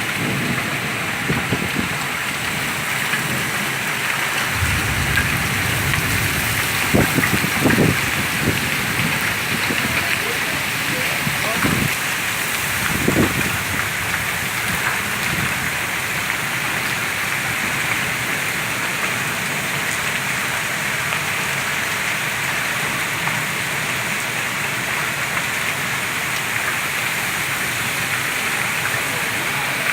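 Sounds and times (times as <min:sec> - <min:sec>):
storm rain rushing: 0:00.0 - 0:19.3.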